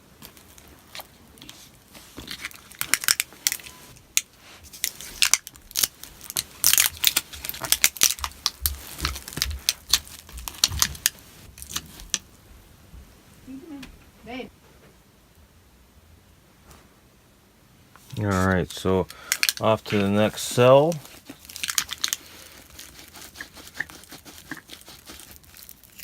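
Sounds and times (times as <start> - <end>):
battery adhesive crackling and tearing: 2.4 - 12.2, 19.1 - 26.0.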